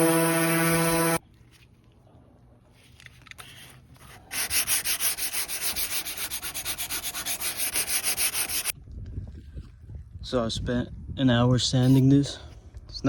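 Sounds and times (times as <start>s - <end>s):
sanding painted metal panel: 0.0s - 1.2s, 4.1s - 8.7s.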